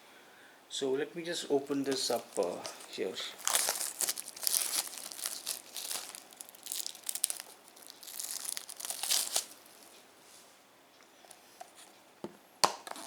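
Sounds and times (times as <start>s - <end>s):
packaging crinkling and tearing: 1.6s - 10.0s.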